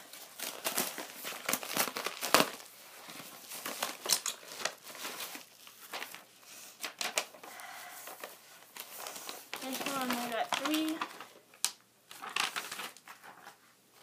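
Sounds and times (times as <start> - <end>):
packaging tearing: 0.0 - 6.2, 8.8 - 13.2
packaging crinkling and rustling: 0.0 - 14.0.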